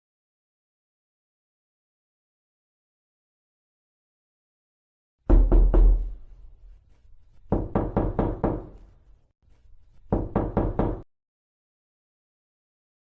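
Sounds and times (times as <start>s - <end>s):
knocking on a door: 5.3s - 6.2s, 7.5s - 8.8s, 10.1s - 11.1s.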